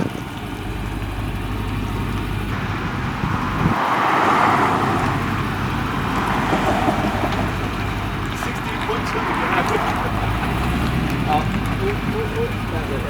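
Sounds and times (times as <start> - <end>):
car engine idling: 0.0 - 13.0
rushing noise: 2.5 - 11.6.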